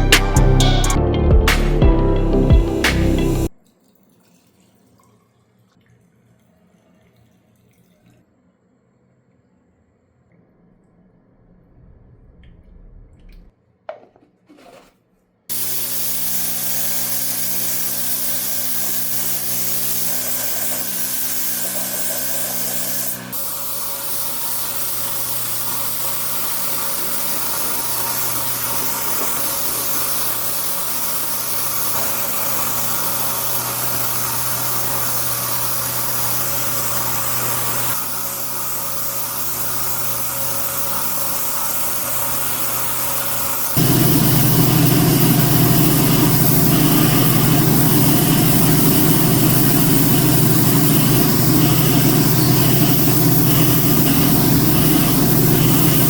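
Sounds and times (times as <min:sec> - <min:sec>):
motor hum: 0:15.5 - 0:56.0
pressurized spray hissing: 0:15.5 - 0:56.0.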